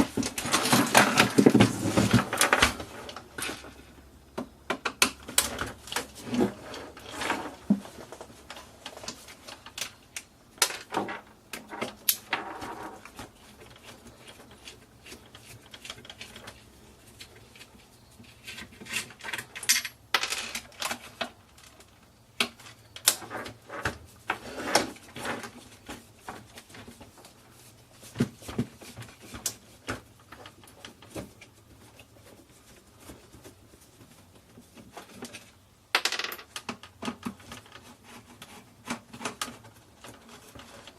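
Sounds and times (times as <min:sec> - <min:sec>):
small parts clicking and rattling: 0:08.5 - 0:23.9.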